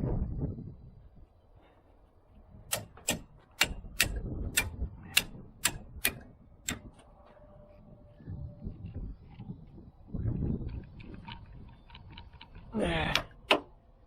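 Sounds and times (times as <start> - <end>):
sharp clicks: 2.7 - 6.9.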